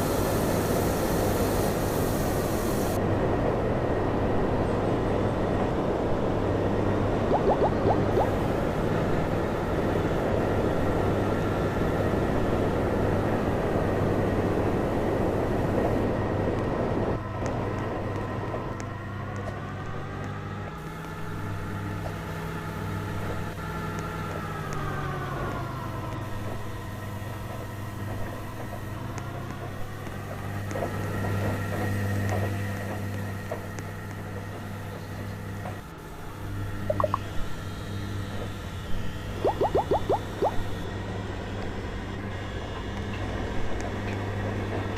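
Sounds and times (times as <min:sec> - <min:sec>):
low hum: 0:06.6 - 0:09.3, 0:36.8 - 0:37.5, 0:39.2 - 0:40.9
washing machine whirring: 0:39.1 - 0:41.5.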